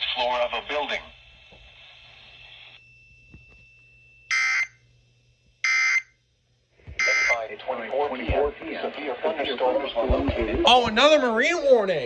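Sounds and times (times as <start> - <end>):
harsh digital data bursts: 7.0 - 7.4
faint steady high tone: 7.0 - 7.5.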